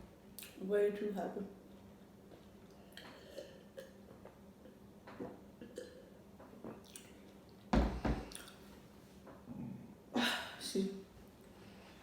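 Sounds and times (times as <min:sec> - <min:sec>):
wet mouth smacks chewing: 0:06.8 - 0:07.2
loud deep thump: 0:07.8 - 0:08.3.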